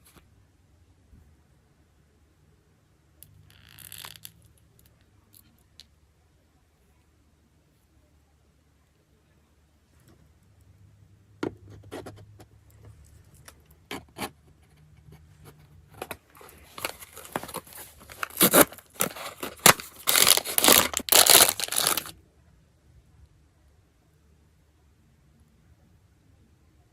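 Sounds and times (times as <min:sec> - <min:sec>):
packaging crinkling and tearing: 0:16.0 - 0:22.1.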